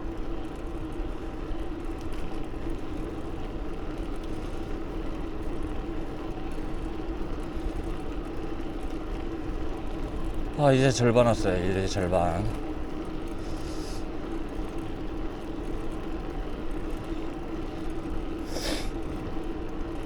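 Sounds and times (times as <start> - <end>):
bicycle tyre noise: 0.0 - 20.0.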